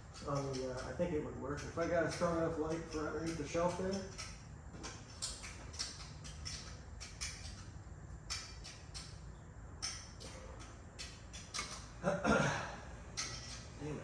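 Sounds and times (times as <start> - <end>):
light clicks and scrapes: 0.0 - 9.2.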